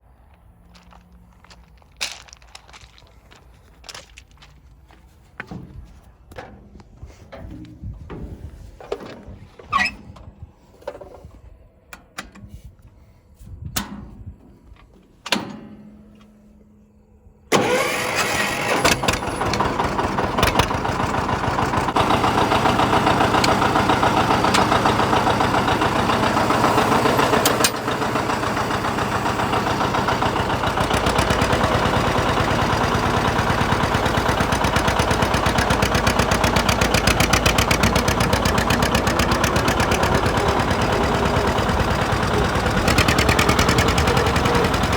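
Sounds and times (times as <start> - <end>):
tractor diesel engine running: 0.0 - 16.6, 17.5 - 44.9.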